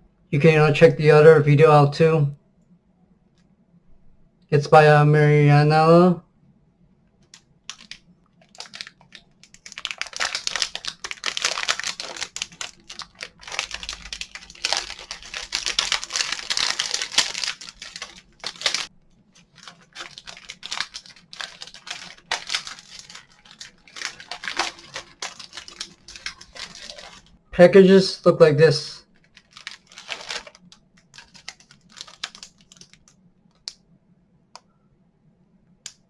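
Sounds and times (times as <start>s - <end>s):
plastic wrapper crinkling: 7.3s - 27.4s, 29.0s - 33.7s.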